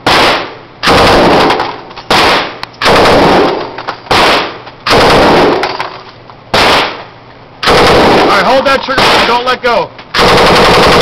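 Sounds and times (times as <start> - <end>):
gunfire echo: 0.0 - 5.9, 6.5 - 9.5
machine gun firing automatic bursts: 0.1 - 5.8, 7.6 - 9.5, 10.1 - 11.0.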